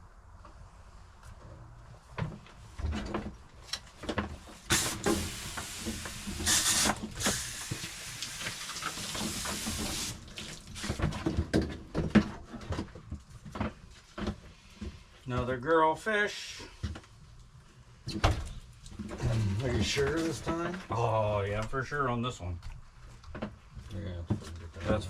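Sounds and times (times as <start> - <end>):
water running: 4.7 - 10.8
knocks and handling clatter: 10.8 - 15.2.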